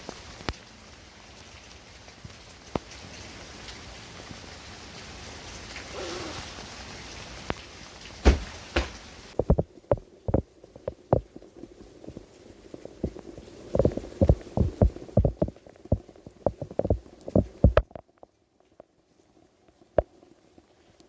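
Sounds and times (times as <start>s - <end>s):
steady rain hiss: 0.0s - 21.0s
dull thuds: 8.2s - 10.4s, 13.8s - 17.9s
sharp knocks: 8.2s - 10.4s.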